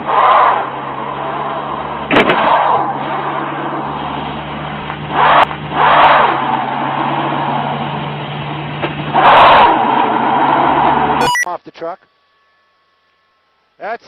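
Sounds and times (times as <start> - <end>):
car engine accelerating hard: 0.0 - 11.2.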